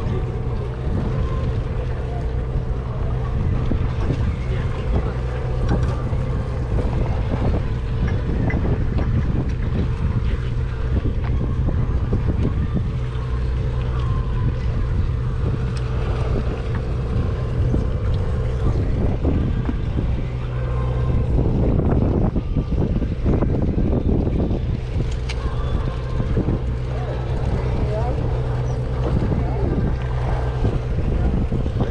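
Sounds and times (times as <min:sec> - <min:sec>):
boat engine droning: 0:00.0 - 0:31.9
wind on microphone: 0:00.0 - 0:31.9.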